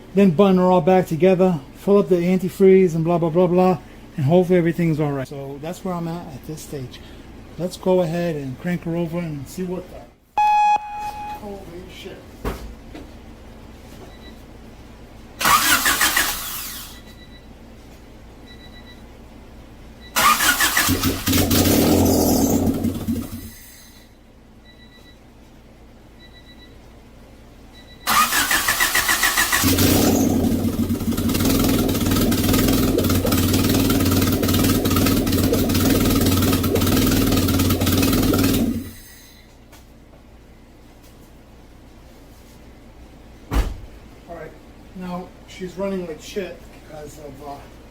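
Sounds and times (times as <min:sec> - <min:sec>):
car starter cranking: 0:15.4 - 0:17.0, 0:20.2 - 0:23.5, 0:28.1 - 0:39.0
car engine running roughly: 0:20.2 - 0:23.6, 0:28.1 - 0:39.0.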